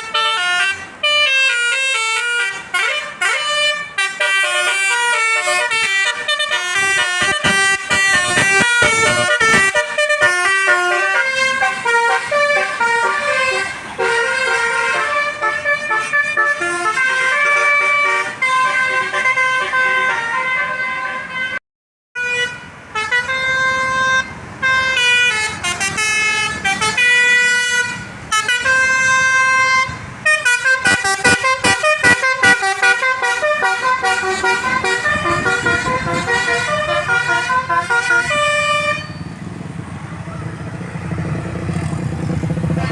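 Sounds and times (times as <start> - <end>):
multi-tone musical bus horns: 0.0 - 21.6, 22.2 - 42.9.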